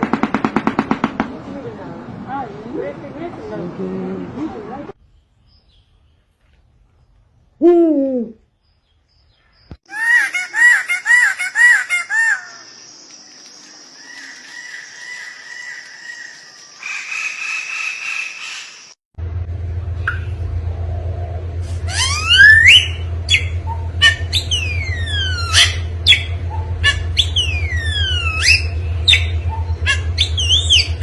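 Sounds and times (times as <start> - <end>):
bird calls: 5.1 - 19.0, 21.7 - 31.0
low steady hum: 19.2 - 31.0.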